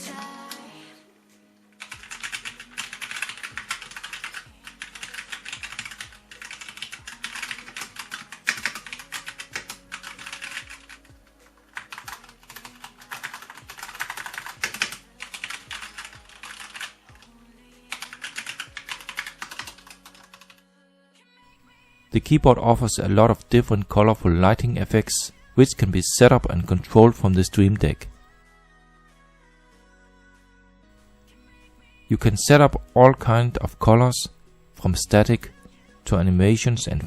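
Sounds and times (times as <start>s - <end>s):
mechanical keyboard typing: 1.8s - 11.1s, 11.7s - 17.3s, 17.9s - 20.6s.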